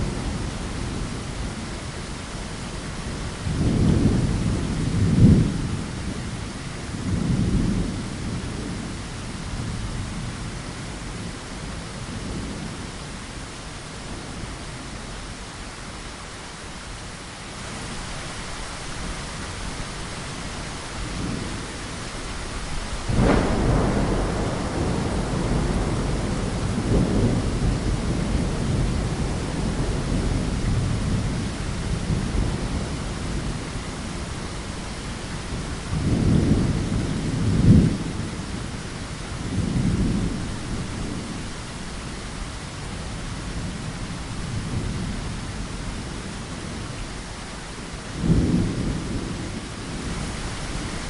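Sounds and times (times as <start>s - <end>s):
steady rain falling: 0.0s - 51.0s
thunder rumbling: 2.6s - 13.0s, 20.3s - 51.0s
sharp thunderclap: 23.0s - 33.6s, 35.5s - 38.6s, 48.2s - 51.0s.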